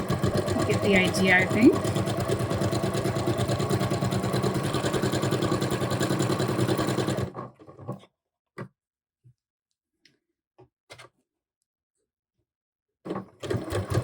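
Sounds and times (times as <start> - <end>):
sewing machine stitching: 0.0 - 8.0, 13.1 - 14.0.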